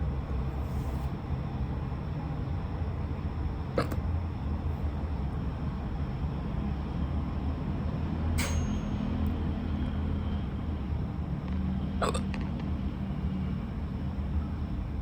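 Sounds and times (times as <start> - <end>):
steady low hum: 0.0 - 15.0
person hiccuping: 3.8 - 4.0, 12.0 - 12.3.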